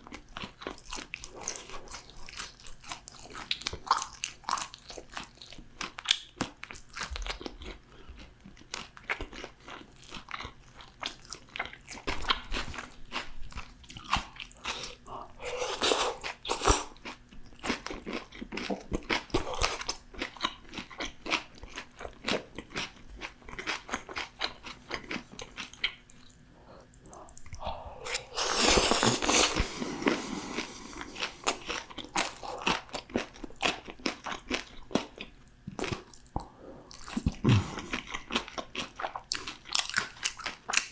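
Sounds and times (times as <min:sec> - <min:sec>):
crunchy fried food chewing: 0:00.0 - 0:40.9.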